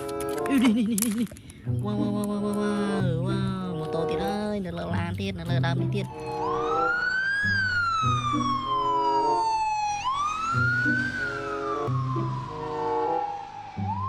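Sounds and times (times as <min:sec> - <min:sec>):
wailing siren: 0:05.8 - 0:14.0.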